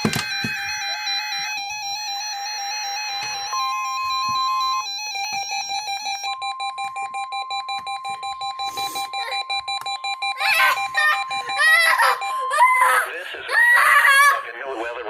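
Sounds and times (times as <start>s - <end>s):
high alarm tone: 0.0s - 14.2s
fast pulsing beeps: 6.3s - 12.8s.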